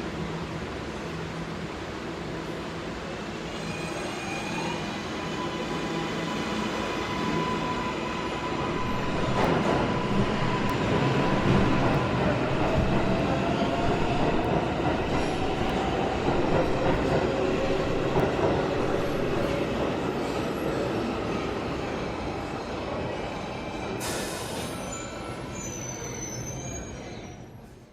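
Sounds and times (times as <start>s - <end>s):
metro train rumble: 0.0s - 25.5s
train motor whine: 8.6s - 19.5s
high wheel squeals: 24.6s - 27.6s.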